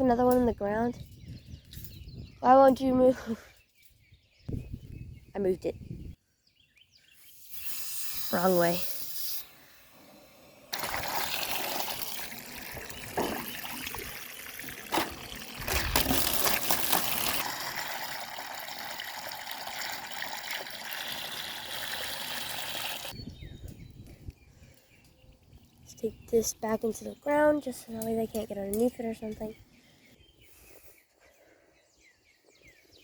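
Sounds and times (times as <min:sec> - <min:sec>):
water splashing into a container: 0:10.7 - 0:23.2.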